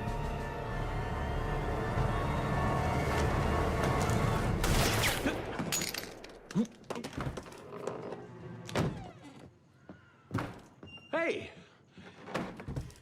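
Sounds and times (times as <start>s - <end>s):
tense dramatic music: 0.0s - 5.6s.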